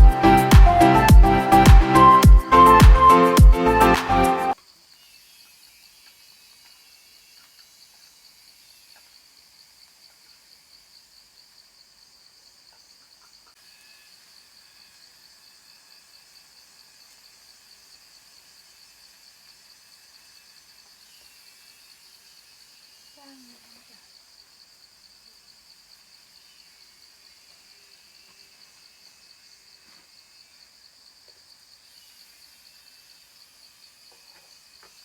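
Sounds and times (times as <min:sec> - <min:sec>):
background music: 0:00.0 - 0:04.6
cicadas chorus: 0:04.5 - 0:35.0.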